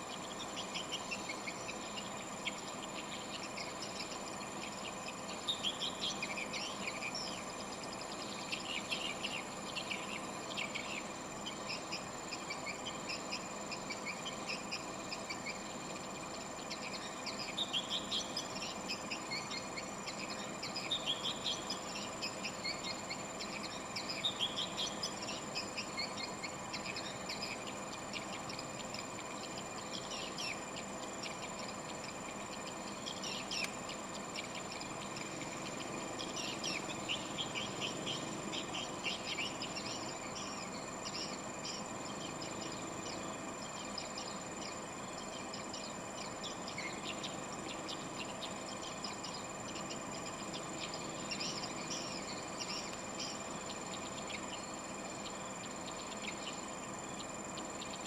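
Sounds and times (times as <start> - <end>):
high-pitched whine: 0.0 - 58.0
low background hum: 0.0 - 58.0.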